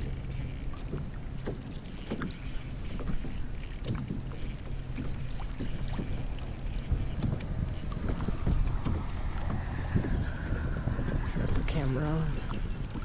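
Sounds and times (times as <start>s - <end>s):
water against kayak hull: 0.0s - 13.0s
wind buffeting microphone: 0.0s - 13.0s
light ticks and knocks: 0.6s - 9.7s.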